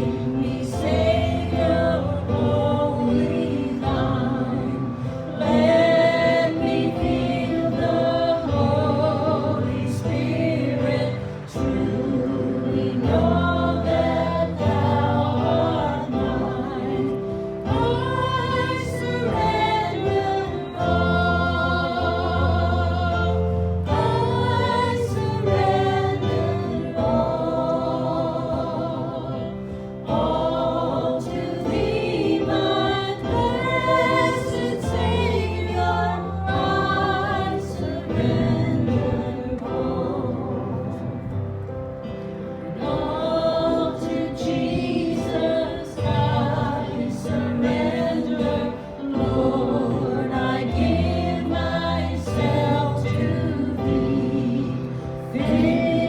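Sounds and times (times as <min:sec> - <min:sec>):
group singing gospel song: 0:00.0 - 0:56.0
instrumental accompaniment with bass: 0:00.0 - 0:56.0.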